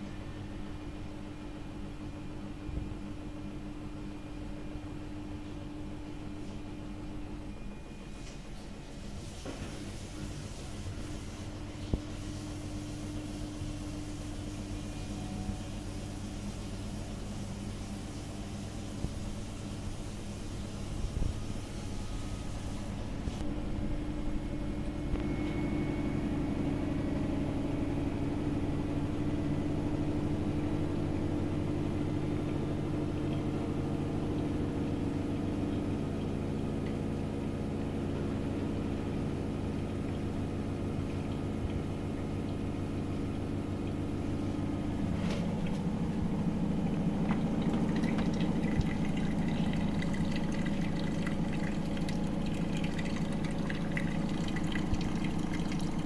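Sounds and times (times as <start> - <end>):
washing machine motor hum: 0.0 - 56.0
water sloshing in drum: 39.4 - 56.0.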